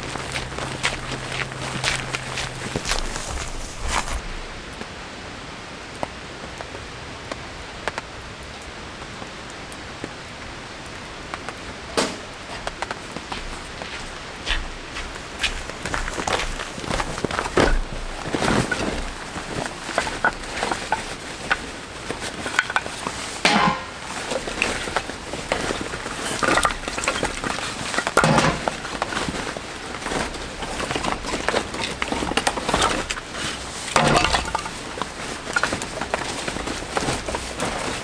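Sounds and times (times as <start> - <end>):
camp gear knocking and clinking: 0.0 - 4.5, 15.1 - 38.0.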